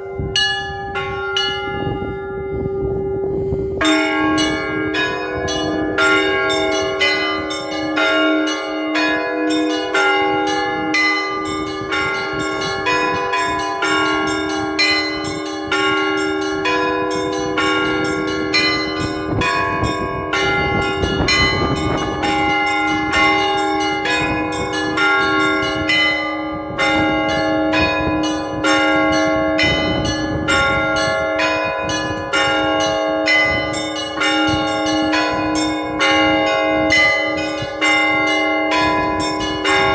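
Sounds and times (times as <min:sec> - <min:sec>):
low hum of larger bells: 0:00.0 - 0:39.9
small church bells pealing: 0:00.0 - 0:39.9.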